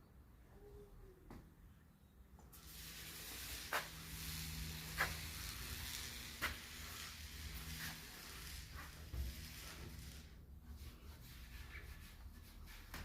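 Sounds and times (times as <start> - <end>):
steady hiss: 2.4 - 13.0.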